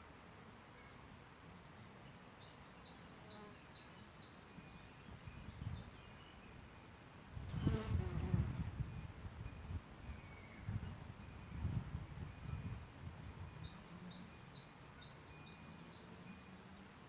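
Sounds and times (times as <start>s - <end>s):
bee buzzing: 7.5s - 8.7s.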